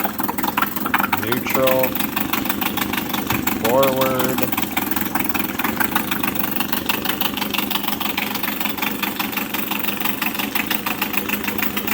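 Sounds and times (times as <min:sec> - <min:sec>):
outboard motor idling: 0:00.0 - 0:11.9.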